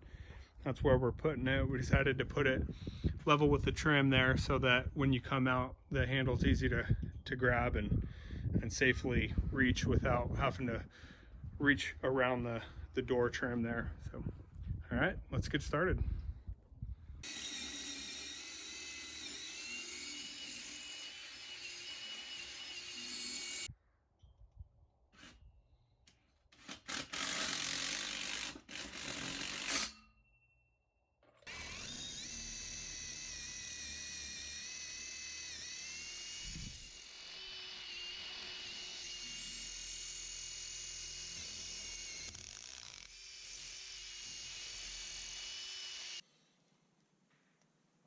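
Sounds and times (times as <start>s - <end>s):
drill boring into concrete: 17.2s - 23.7s, 26.6s - 30.0s, 31.4s - 46.3s.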